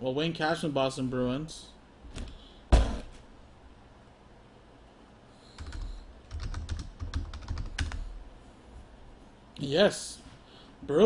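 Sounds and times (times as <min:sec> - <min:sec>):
computer keyboard typing: 0:05.6 - 0:08.1.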